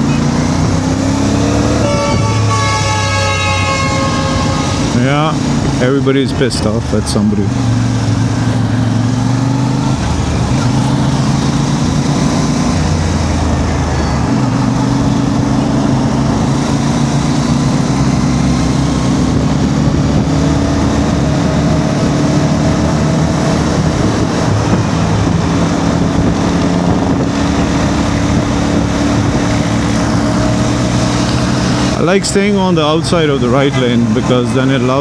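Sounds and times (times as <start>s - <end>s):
wind noise on microphone: 0.0s - 3.0s, 8.0s - 32.0s
motorcycle engine at low revs: 0.0s - 35.0s.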